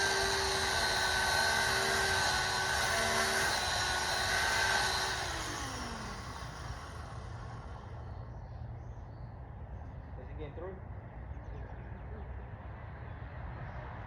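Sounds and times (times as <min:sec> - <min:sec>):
chainsaw cutting: 0:00.0 - 0:07.9.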